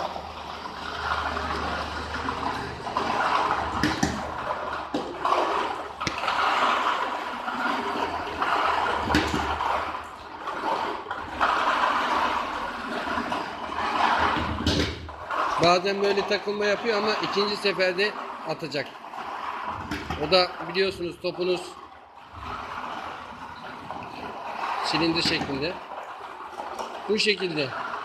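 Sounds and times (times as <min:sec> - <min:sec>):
low motor hum: 0:00.0 - 0:18.6
balls knocking: 0:00.0 - 0:28.0
lottery balls churning: 0:00.0 - 0:28.0.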